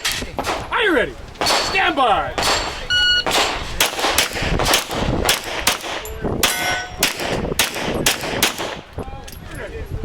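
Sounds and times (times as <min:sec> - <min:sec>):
rapid pistol fire: 0:02.4 - 0:08.8
steel plates ringing: 0:06.4 - 0:07.0.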